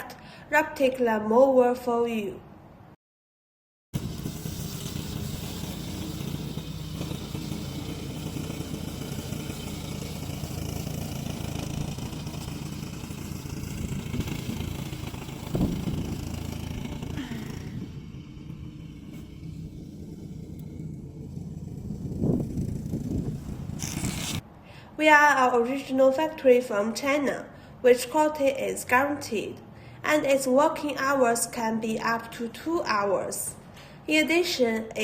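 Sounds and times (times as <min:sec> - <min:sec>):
grass cutter engine running: 0:04.0 - 0:24.4
brief thump: 0:15.5 - 0:16.1.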